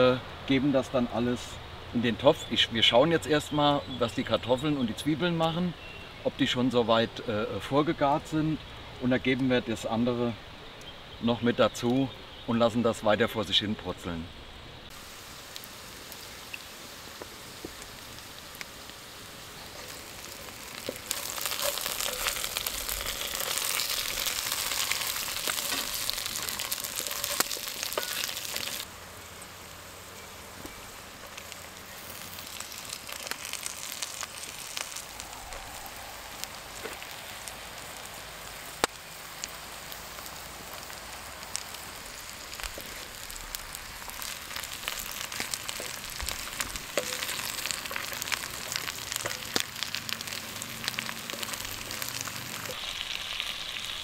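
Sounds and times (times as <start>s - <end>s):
popping: 14.9s - 28.9s, 30.6s - 54.0s
food sizzling in a pot: 14.9s - 54.0s.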